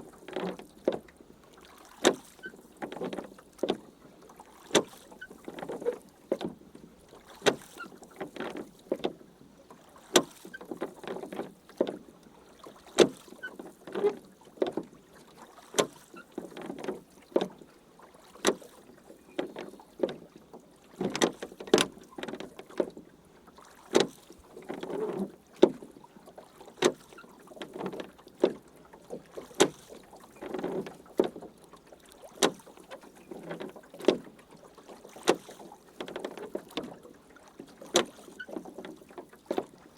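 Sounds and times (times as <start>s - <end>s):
oars splashing through water: 0.0s - 39.9s
oars knocking in oarlocks: 2.0s - 3.8s.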